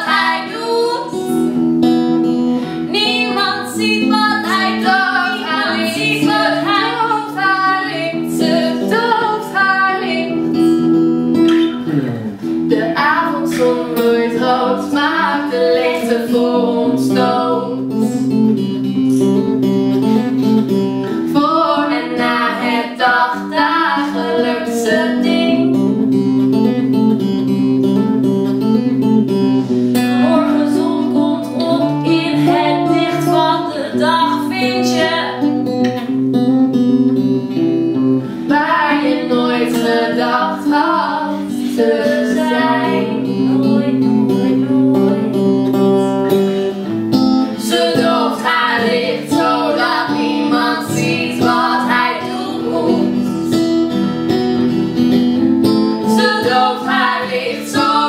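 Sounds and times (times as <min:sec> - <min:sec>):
acoustic guitar playing: 0:00.0 - 0:58.0
person singing: 0:12.0 - 0:18.3, 0:30.2 - 0:35.6, 0:38.3 - 0:46.8, 0:47.4 - 0:53.8, 0:56.0 - 0:58.0.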